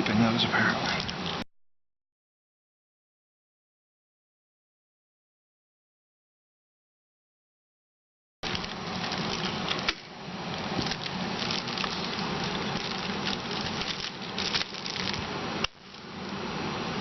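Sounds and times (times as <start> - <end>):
adhesive tape peeling crackle: 8.4 - 16.1.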